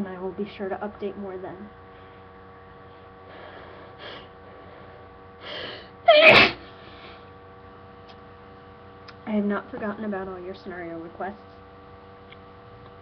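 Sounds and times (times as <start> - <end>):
person sneezing: 5.5 - 6.8.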